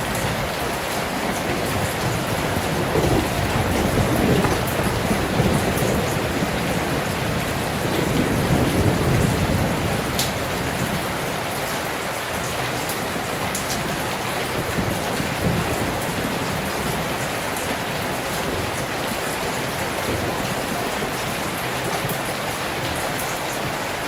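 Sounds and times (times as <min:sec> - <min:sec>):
heavy rain heard indoors: 0:00.0 - 0:24.0.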